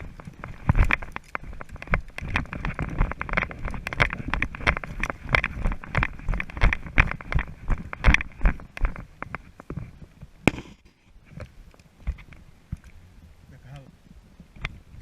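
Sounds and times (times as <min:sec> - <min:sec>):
gear and clothing rustling: 0:00.0 - 0:10.3
footsteps on rough ground: 0:00.0 - 0:12.4.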